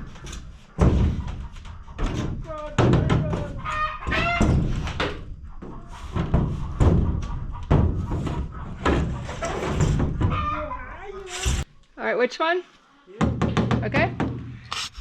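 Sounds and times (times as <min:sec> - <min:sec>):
thumps on roof panels: 0:00.7 - 0:10.4.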